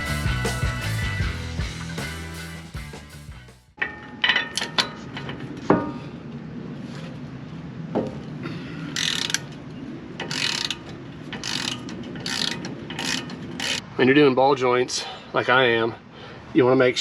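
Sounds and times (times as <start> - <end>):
ratchet wrench clicking: 9.0 - 9.5, 10.2 - 13.8.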